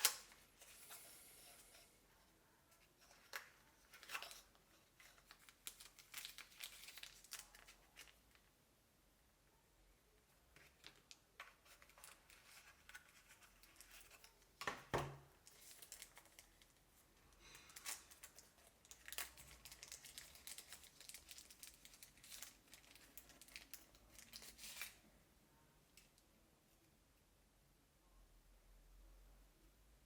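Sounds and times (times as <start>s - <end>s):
packaging crinkling and rustling: 2.9s - 8.5s, 15.4s - 25.0s.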